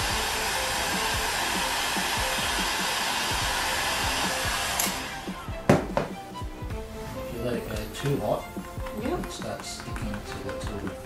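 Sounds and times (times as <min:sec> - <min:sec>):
heat gun blowing: 0:00.0 - 0:06.2.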